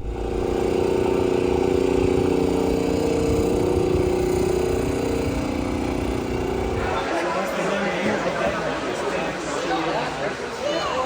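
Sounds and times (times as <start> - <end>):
car engine low rumble: 0.0 - 7.0.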